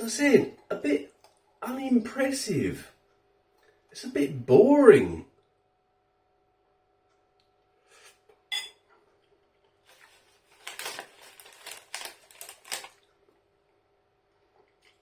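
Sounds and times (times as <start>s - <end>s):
cutlery clinking on bowl: 8.5s - 8.8s.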